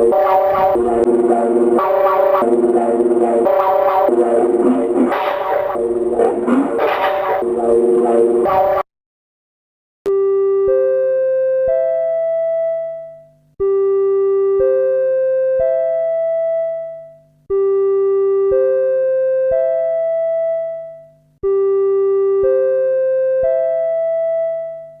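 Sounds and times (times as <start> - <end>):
electronic alert chime: 0.0 - 8.8
steady low hum: 0.0 - 8.8.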